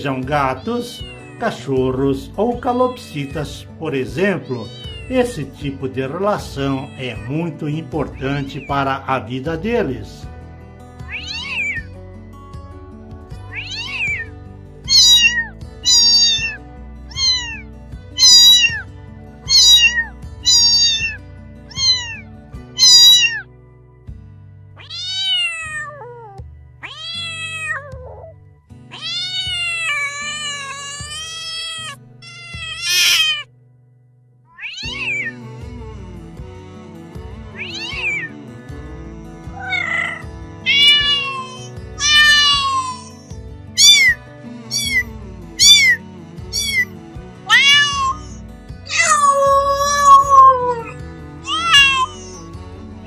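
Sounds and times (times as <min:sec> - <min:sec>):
background music: 0:00.0 - 0:53.0
cat meowing: 0:00.5 - 0:01.6, 0:04.3 - 0:05.4, 0:06.7 - 0:07.3, 0:11.1 - 0:12.0, 0:13.4 - 0:23.5, 0:24.8 - 0:33.5, 0:34.5 - 0:35.4, 0:37.6 - 0:38.4, 0:39.5 - 0:52.5.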